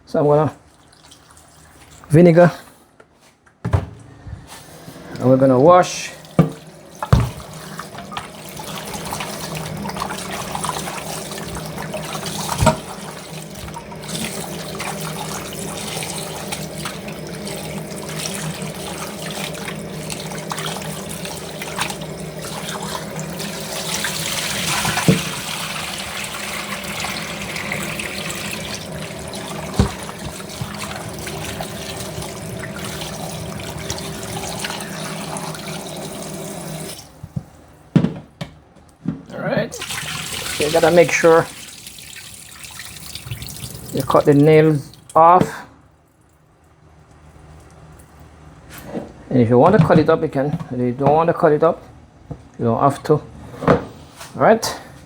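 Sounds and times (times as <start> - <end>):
knocks against sink: 3.6 - 4.0, 6.4 - 7.5, 29.8 - 30.8
tap water running into sink: 5.1 - 38.2, 39.8 - 45.6.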